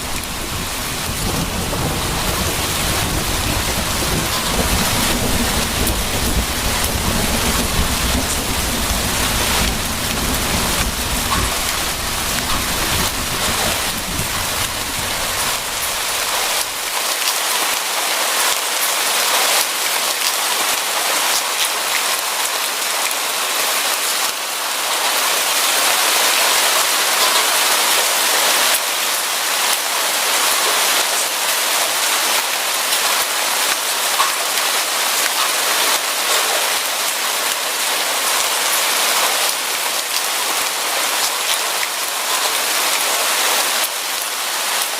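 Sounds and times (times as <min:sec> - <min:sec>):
low thunder rumble: 0:00.0 - 0:16.9
heavy rain pattering: 0:00.0 - 0:44.9.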